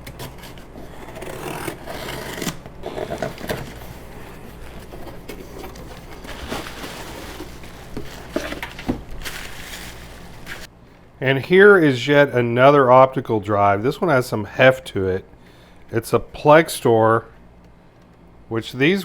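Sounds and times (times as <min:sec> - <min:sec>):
objects rubbing and scraping on surface: 0:00.2 - 0:10.7.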